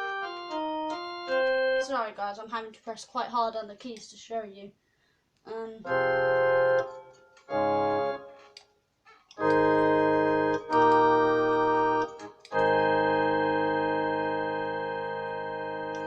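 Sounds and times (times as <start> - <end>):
electronic keyboard organ chords: 0.0 - 2.0, 5.8 - 8.6, 9.4 - 16.0.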